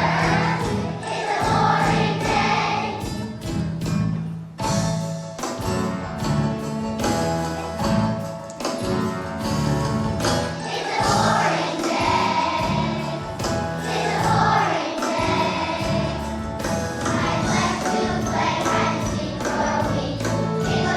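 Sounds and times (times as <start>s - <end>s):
children's choir singing: 0.0s - 3.5s, 10.4s - 20.9s
instrumental accompaniment with beat: 0.0s - 20.9s.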